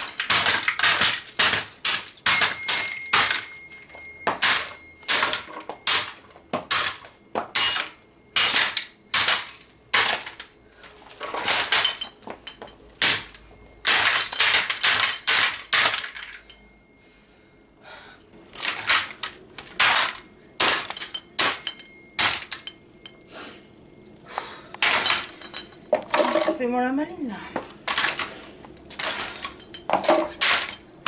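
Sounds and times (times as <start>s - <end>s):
clattering breakage: 0.0s - 16.6s, 18.5s - 22.8s, 24.8s - 26.7s, 27.8s - 28.3s, 28.9s - 30.9s
hard blows smashing toy car: 28.9s - 30.8s.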